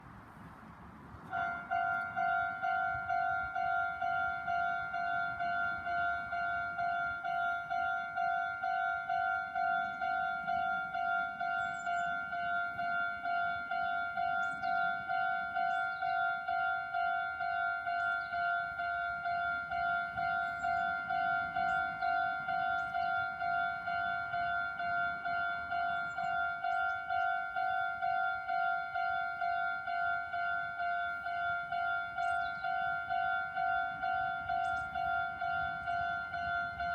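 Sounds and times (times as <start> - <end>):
level crossing warning bell: 1.3 - 36.9.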